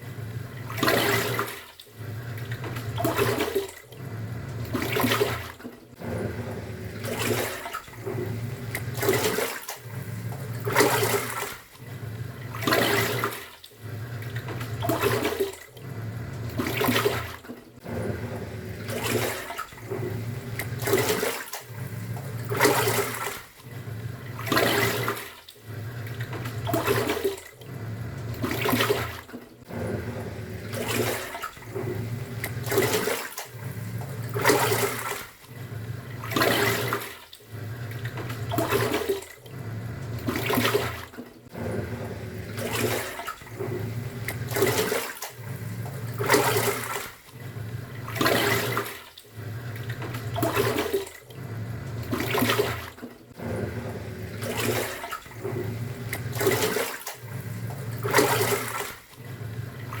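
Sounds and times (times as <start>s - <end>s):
washing machine motor hum: 0.0s - 60.0s
water sloshing: 0.0s - 60.0s.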